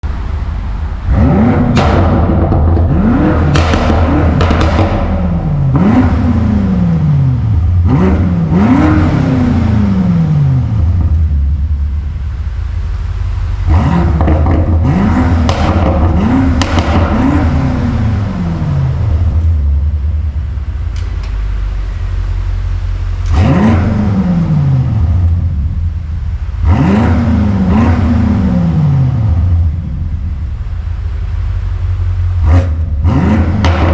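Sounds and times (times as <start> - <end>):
car engine revving: 0.0 - 33.9.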